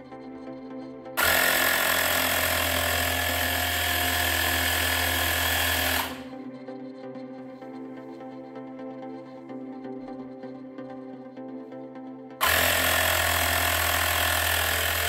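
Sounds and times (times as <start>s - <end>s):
background music: 0.0s - 15.0s
air compressor buzzing: 1.2s - 6.3s, 12.4s - 15.0s.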